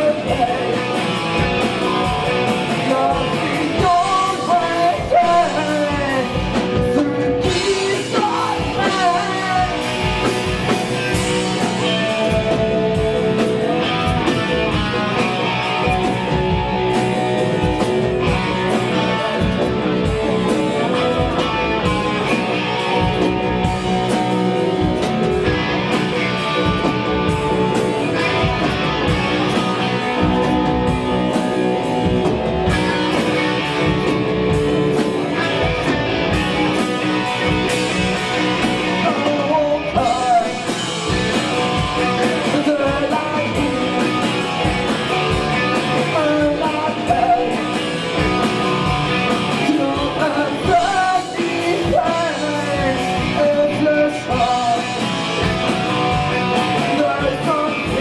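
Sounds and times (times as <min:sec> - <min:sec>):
singer's vocals: 0:00.0 - 0:14.0, 0:38.8 - 0:44.7, 0:45.4 - 0:48.4, 0:49.4 - 0:55.6, 0:56.4 - 0:58.0
hard rock band playing: 0:00.0 - 0:58.0.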